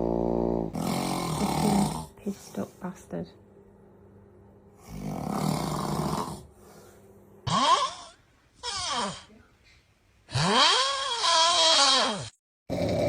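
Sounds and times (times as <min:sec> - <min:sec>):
person snoring: 0:00.0 - 0:02.1, 0:04.8 - 0:06.8, 0:10.3 - 0:13.0.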